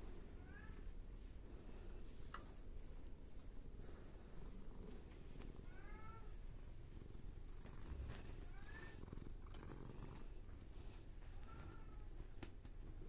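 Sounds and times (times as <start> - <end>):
cat purring: 0.0 - 12.0, 12.6 - 13.0.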